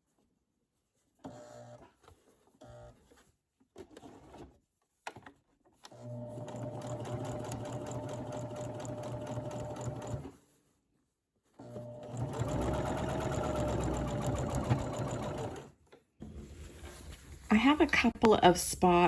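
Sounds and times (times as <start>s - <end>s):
sewing machine stitching: 5.9s - 10.4s, 11.6s - 15.8s
sewing machine clicks: 12.0s - 15.7s.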